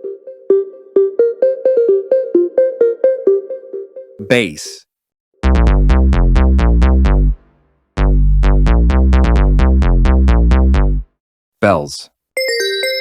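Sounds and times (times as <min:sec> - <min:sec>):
ringtone melody on deep bass: 0:05.4 - 0:07.4, 0:08.0 - 0:11.1.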